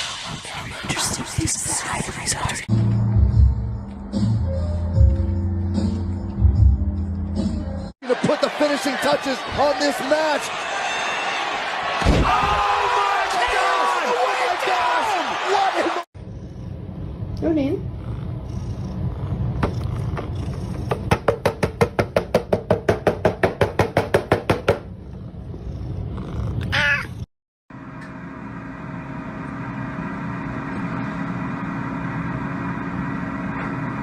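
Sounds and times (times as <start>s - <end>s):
steady mechanical hum: 16.2s - 21.0s, 27.8s - 34.0s
cat meowing: 26.6s - 27.2s.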